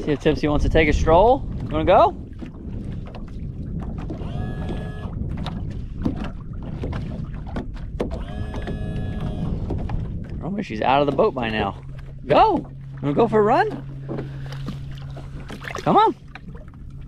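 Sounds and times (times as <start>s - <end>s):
wind and water against hull: 0.0s - 17.0s
knocks on boat: 2.4s - 12.7s.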